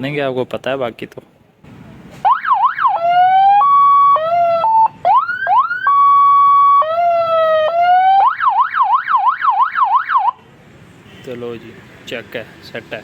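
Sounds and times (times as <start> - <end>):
electronic siren: 2.3 - 10.4.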